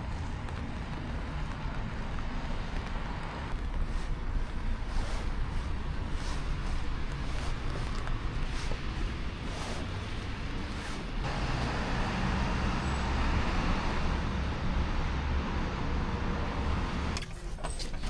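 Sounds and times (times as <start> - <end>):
road vehicle rumble and hiss: 0.0 - 17.2.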